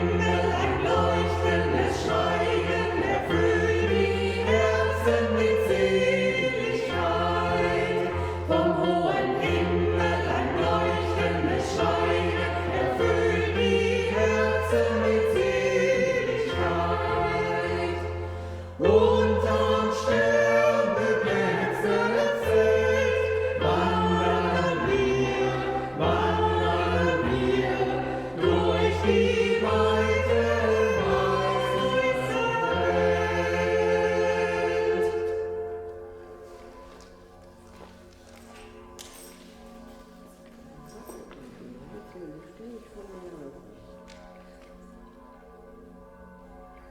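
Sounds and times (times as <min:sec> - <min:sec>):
choir singing: 0:00.0 - 0:38.0.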